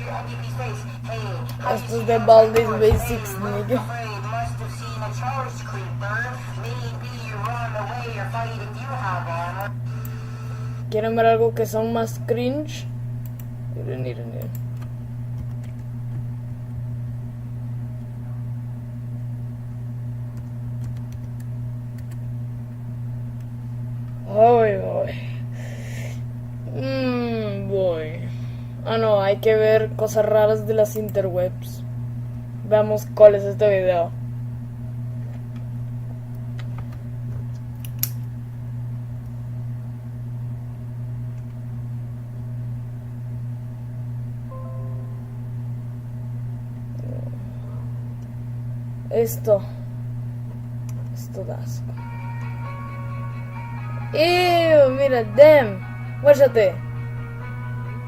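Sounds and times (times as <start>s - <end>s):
low electrical hum: 0.0s - 58.0s
faint high tone: 44.5s - 45.6s.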